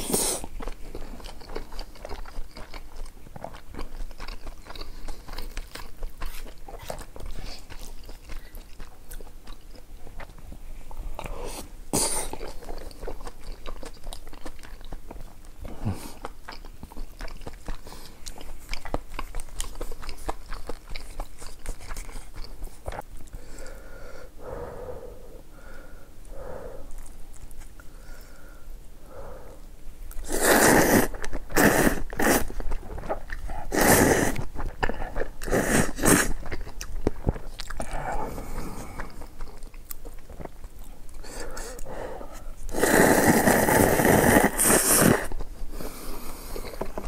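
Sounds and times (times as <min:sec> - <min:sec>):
loud mouth sound: 0:00.0 - 0:00.5, 0:11.3 - 0:12.4, 0:30.2 - 0:32.5, 0:33.6 - 0:34.4, 0:42.7 - 0:46.3
person chewing food: 0:00.0 - 0:25.2, 0:26.2 - 0:28.6, 0:29.4 - 0:47.0.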